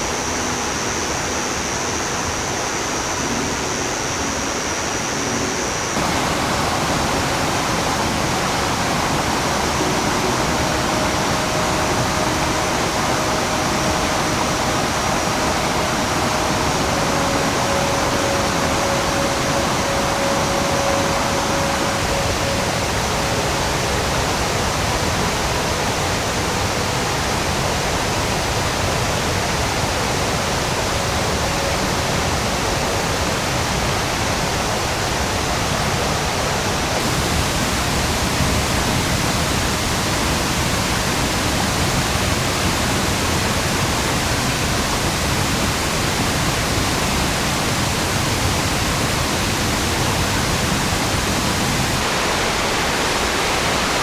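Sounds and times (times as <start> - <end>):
faint steady tone: 0.0 - 36.1
stream rushing over rapids: 0.0 - 54.0.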